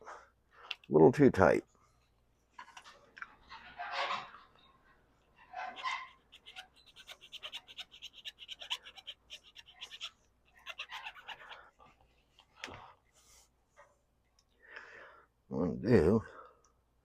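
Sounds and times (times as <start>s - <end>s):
hand file rasping on metal: 5.4s - 11.7s.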